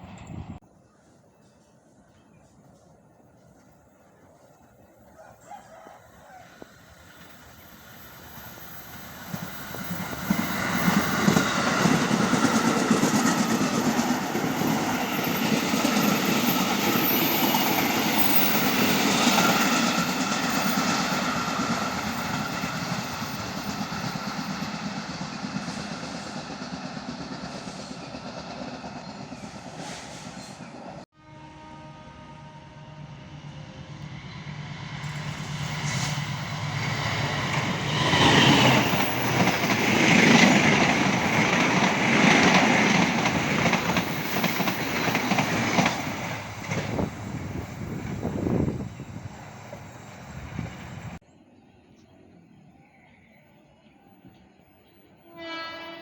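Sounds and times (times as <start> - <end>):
train rumble: 0.0 - 31.1, 31.8 - 51.2
train wheels clattering on rails: 35.0 - 48.8.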